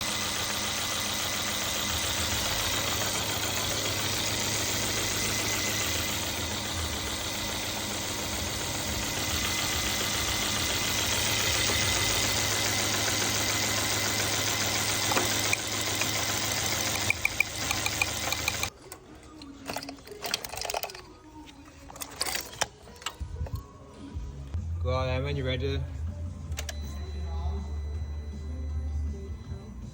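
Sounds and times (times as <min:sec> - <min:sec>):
car engine idling with misfire: 0:00.0 - 0:18.7.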